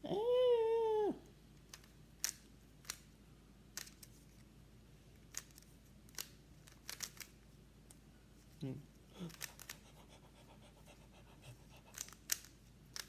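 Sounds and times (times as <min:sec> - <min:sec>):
puzzle cube plastic clicks: 0:01.6 - 0:03.1, 0:03.7 - 0:04.4, 0:05.2 - 0:07.4, 0:09.2 - 0:10.0, 0:11.8 - 0:13.0.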